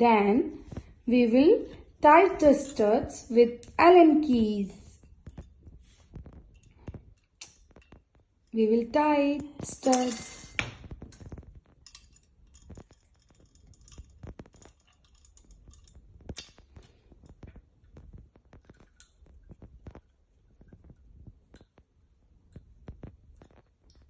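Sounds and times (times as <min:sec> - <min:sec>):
faint metallic clicks and clinks: 0:04.9 - 0:08.6, 0:09.6 - 0:24.0.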